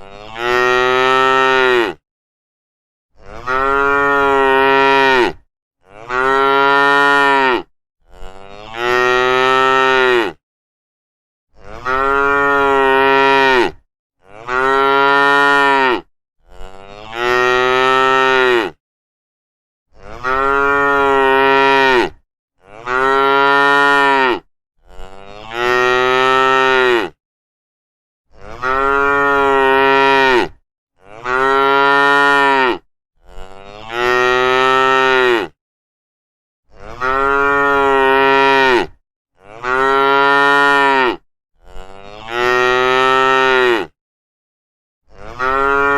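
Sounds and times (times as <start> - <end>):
cattle mooing: 3.2 - 10.4, 11.6 - 18.8, 20.0 - 27.2, 28.4 - 35.6, 36.8 - 43.9, 45.1 - 45.9.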